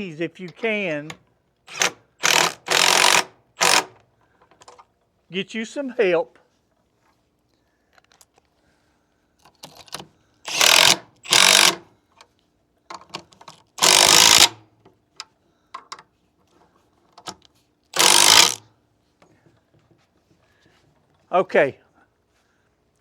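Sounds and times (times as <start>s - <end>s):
socket ratchet clicking: 1.7s - 4.0s, 9.9s - 11.8s, 13.8s - 14.6s, 18.0s - 18.6s.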